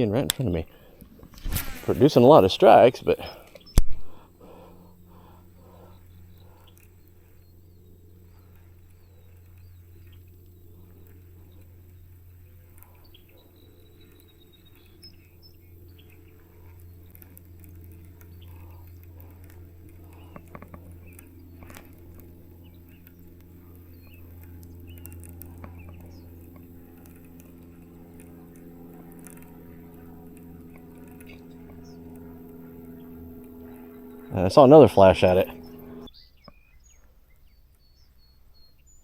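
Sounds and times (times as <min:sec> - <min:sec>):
small reel clicks: 0:12.6 - 0:34.0
fishing reel whirring: 0:24.2 - 0:36.1.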